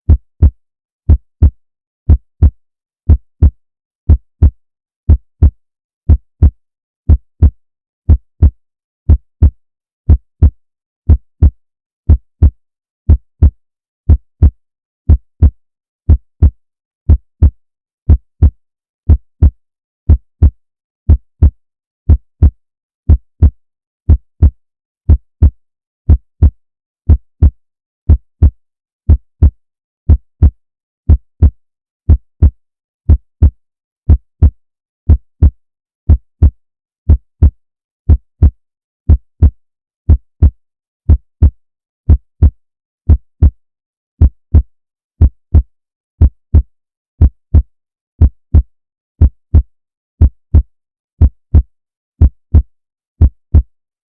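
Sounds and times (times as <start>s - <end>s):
heartbeat thumps: 0.1s - 1.5s.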